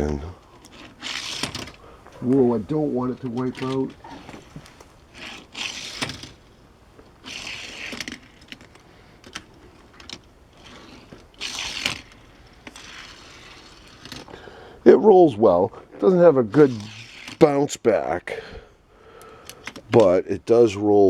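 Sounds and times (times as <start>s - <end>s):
toy car wheels whirring: 0.0s - 14.5s, 16.6s - 17.5s.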